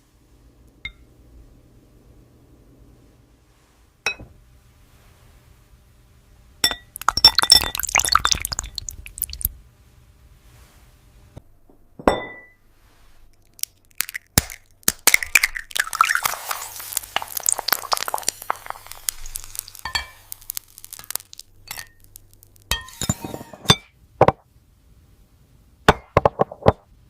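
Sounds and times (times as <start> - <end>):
ringing glass clink: 6.6 - 7.8, 12.1 - 12.6
glassy crackling and crunching: 6.9 - 9.5, 13.3 - 23.6.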